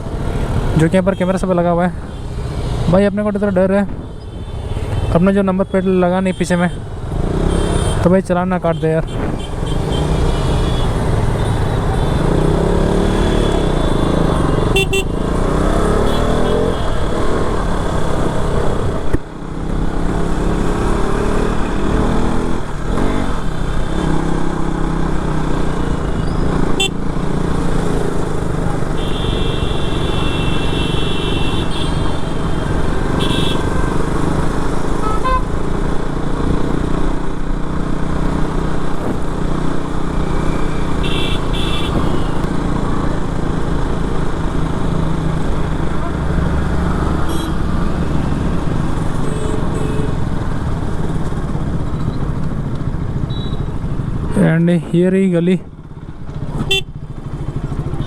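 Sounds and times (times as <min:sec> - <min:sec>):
motorcycle engine revving: 0:06.9 - 0:08.1, 0:08.7 - 0:54.4, 0:55.6 - 0:58.0
vehicle horn honking: 0:09.0 - 0:12.2, 0:13.2 - 0:15.2, 0:16.0 - 0:16.8, 0:28.8 - 0:34.1, 0:35.0 - 0:35.5, 0:41.0 - 0:42.5, 0:47.3 - 0:47.8, 0:49.2 - 0:50.2, 0:53.3 - 0:53.8, 0:56.6 - 0:57.0.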